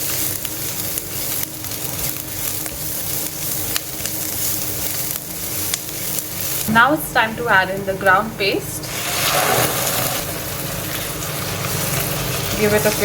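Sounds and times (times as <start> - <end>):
food sizzling in hot oil: 0.0 - 13.0.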